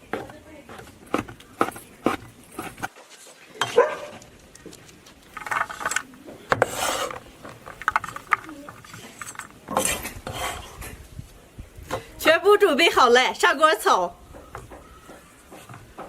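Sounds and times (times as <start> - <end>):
scraping on cutting board: 0.2 - 2.9, 6.5 - 11.0.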